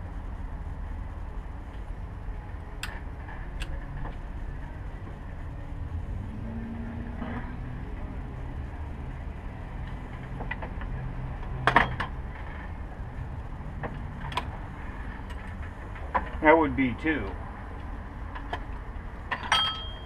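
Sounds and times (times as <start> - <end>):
sharp metallic clank: 19.3 - 20.0.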